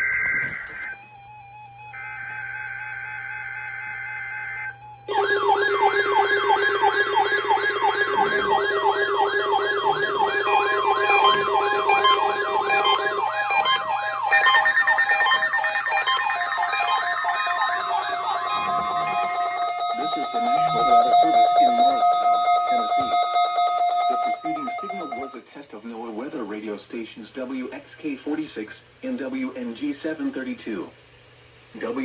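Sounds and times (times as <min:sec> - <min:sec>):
overlapping wailing alarm tones: 0:00.0 - 0:25.4
brief steady tone: 0:16.2 - 0:25.4.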